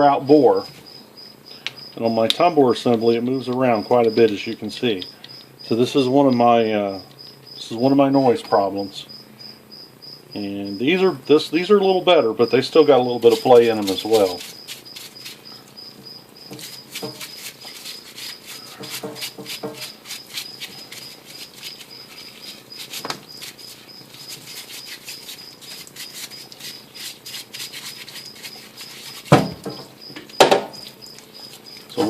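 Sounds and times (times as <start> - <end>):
thump: 29.3 - 30.8.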